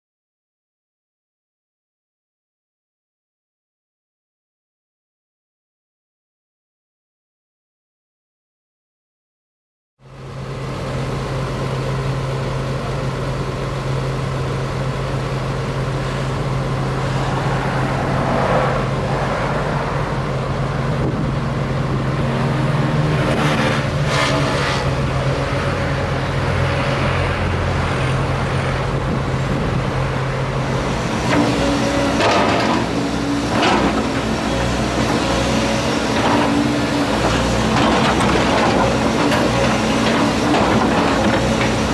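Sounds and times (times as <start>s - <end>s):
excavator diesel engine running: 10.0s - 41.9s
rough scraping of road surface: 16.0s - 30.0s.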